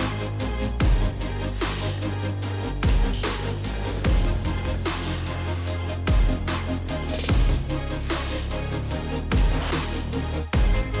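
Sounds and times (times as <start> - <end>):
electronic music with deep bass: 0.0 - 11.0.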